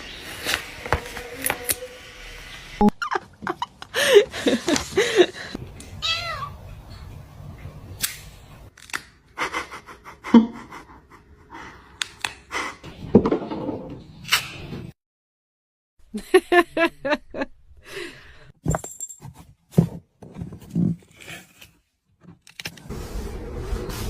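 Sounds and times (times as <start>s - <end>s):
cat meowing: 6.0s - 6.6s.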